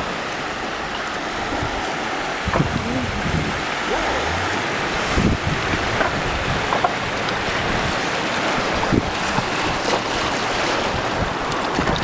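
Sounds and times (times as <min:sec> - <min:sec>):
river water rushing: 0:00.0 - 0:12.0
faint voices calling out: 0:02.5 - 0:04.9.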